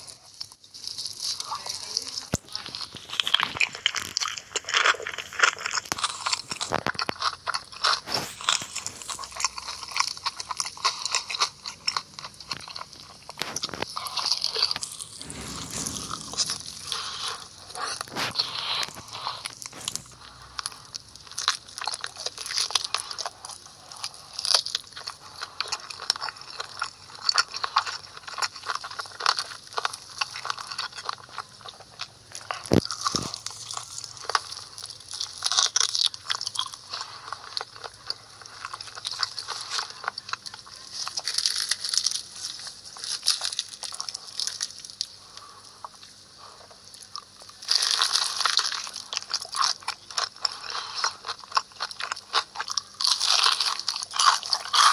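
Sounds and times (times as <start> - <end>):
crunchy food being chewed: 0.0 - 54.9.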